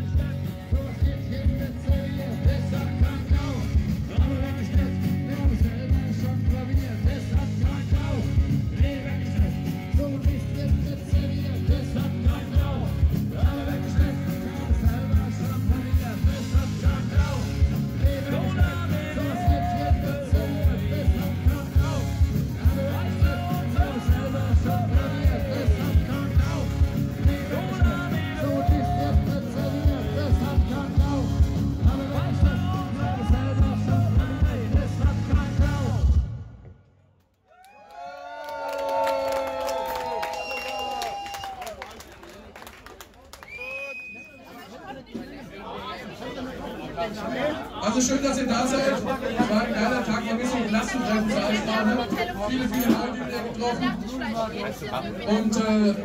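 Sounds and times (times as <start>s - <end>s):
upbeat rock song with vocals: 0.0s - 36.6s, 47.8s - 56.0s.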